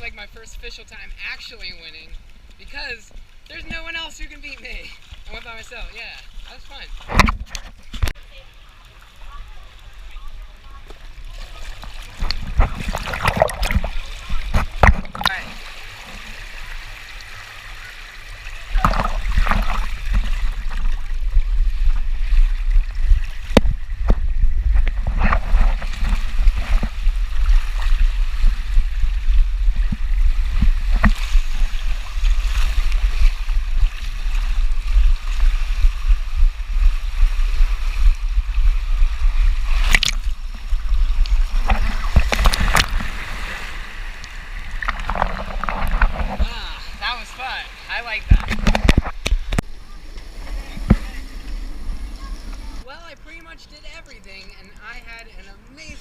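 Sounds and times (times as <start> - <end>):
wind buffeting microphone: 12.1 - 15.4, 18.7 - 47.0
distant voices: 49.5 - 56.0.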